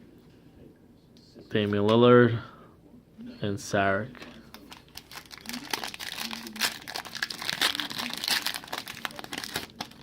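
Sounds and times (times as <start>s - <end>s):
foil wrapper crinkling: 4.5s - 10.0s.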